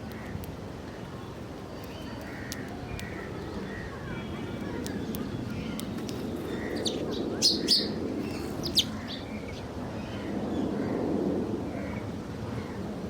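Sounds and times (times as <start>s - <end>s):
low outdoor background hum: 0.0s - 13.0s
small bird chirping: 1.7s - 9.4s.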